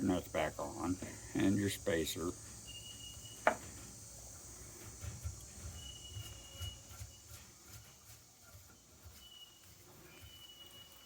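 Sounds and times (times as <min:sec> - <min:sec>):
insects trilling: 0:00.0 - 0:11.0
faint knocks and handling noise: 0:03.4 - 0:04.0.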